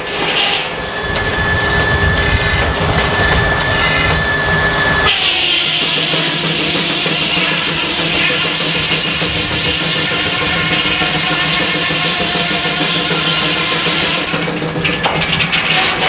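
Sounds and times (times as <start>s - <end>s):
machinery running with high whine: 0.0s - 16.0s
rock music with drums: 5.6s - 15.1s.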